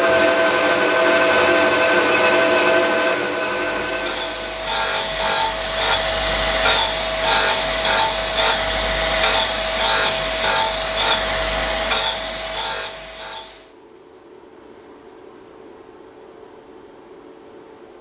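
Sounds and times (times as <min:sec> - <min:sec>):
grinder motor whine: 0:00.0 - 0:13.7
grinding noise: 0:00.0 - 0:13.7.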